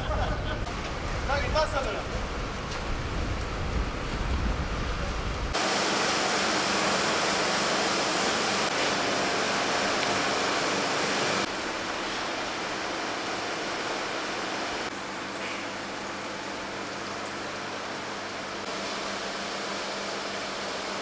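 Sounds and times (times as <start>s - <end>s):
low machinery rumble: 0.0s - 5.6s.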